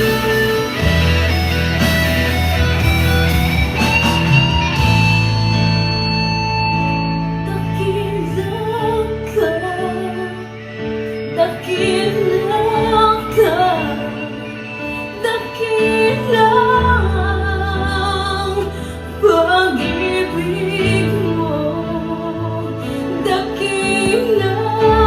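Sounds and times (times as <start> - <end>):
sustained instrumental accompaniment: 0.0 - 25.0
woman singing slow melody: 7.3 - 25.0.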